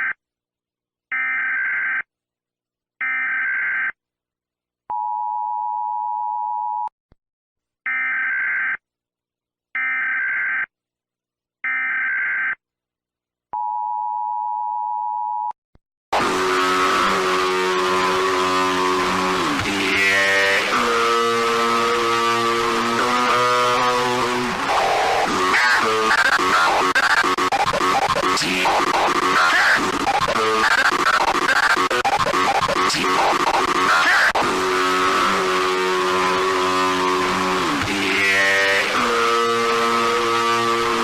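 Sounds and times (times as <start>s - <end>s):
loud harsh noisy sound: 16.1s - 41.0s
digital data bursts: 23.0s - 35.5s.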